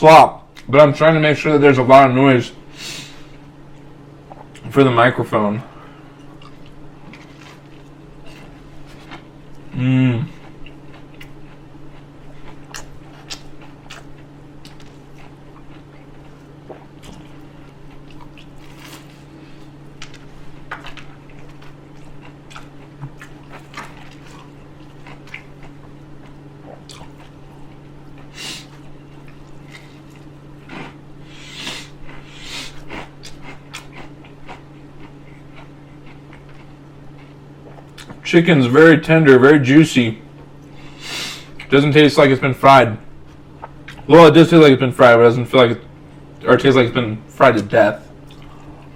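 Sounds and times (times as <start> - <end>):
steady low hum: 0.0 - 48.9
close chewing and biting: 6.2 - 9.7, 10.3 - 19.2, 19.8 - 31.0, 31.6 - 38.2, 48.2 - 48.9.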